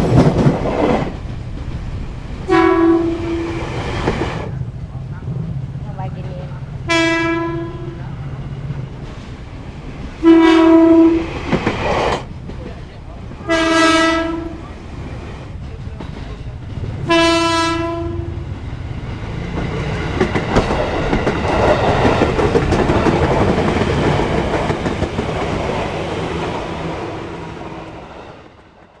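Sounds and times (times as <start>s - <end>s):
train rumble and wheel clatter: 0.0s - 29.0s
train horn blasts: 2.5s - 3.8s, 6.9s - 8.3s, 10.2s - 11.4s, 13.4s - 14.7s, 17.0s - 18.6s.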